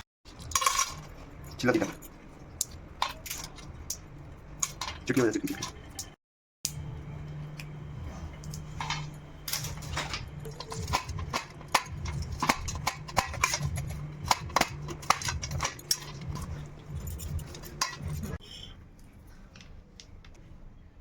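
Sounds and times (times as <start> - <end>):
utensils clinking against dishes: 0.3 - 6.2, 8.4 - 18.4
steady low hum: 0.3 - 20.1.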